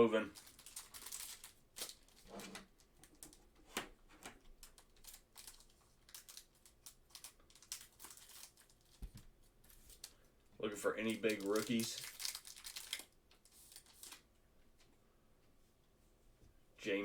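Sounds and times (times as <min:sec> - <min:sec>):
card packs crinkling and clicking: 0:00.2 - 0:10.2, 0:10.8 - 0:14.3.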